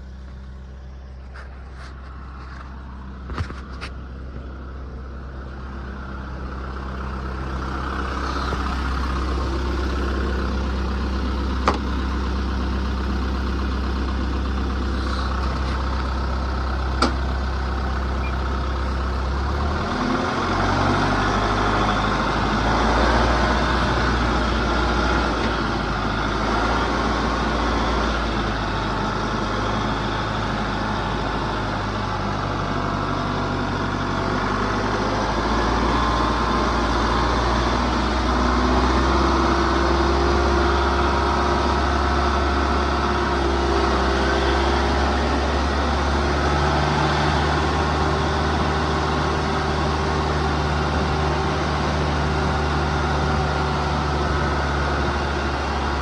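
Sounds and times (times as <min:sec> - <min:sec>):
vehicle engine running: 0:00.0 - 0:56.0.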